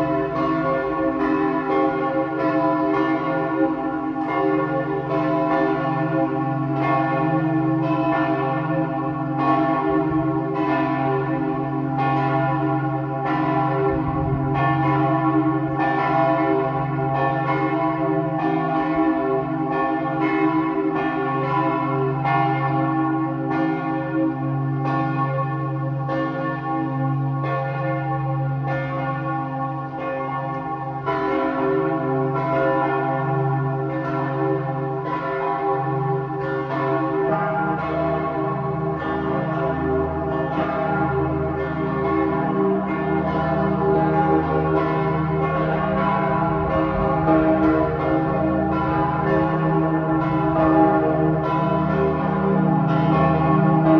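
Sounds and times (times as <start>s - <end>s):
church bells ringing in a peal: 0.0s - 53.9s
deep hum of large bell: 0.0s - 53.9s.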